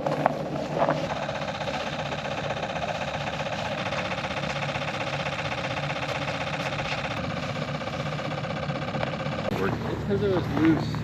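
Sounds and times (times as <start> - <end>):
ice auger engine running: 0.0 - 11.0.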